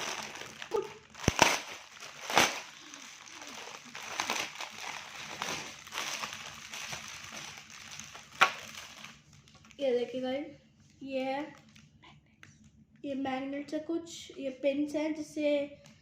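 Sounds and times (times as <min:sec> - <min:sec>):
packaging rustling and crinkling: 0:00.0 - 0:09.8.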